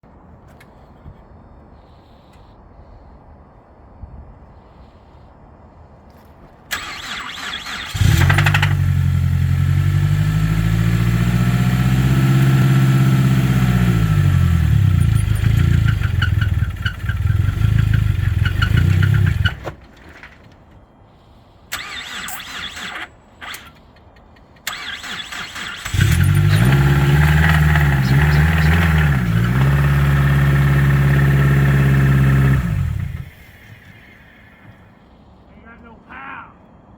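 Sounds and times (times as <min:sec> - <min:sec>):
starter motor cranking: 0:06.7 - 0:09.1, 0:14.4 - 0:20.4, 0:21.7 - 0:23.8, 0:24.6 - 0:34.0
car engine running and revving: 0:07.9 - 0:19.6, 0:25.9 - 0:33.6.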